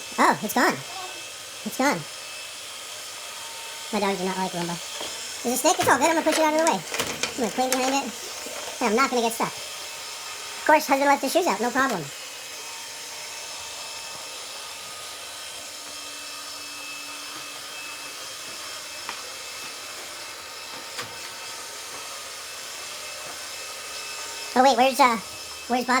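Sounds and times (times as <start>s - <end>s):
robot vacuum whirring: 0.0s - 26.0s.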